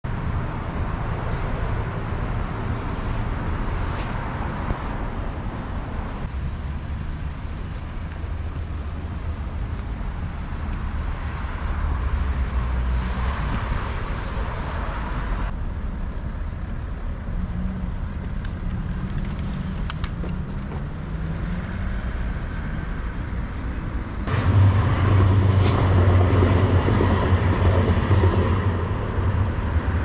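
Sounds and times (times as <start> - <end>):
cars going by: 0.1 - 30.0.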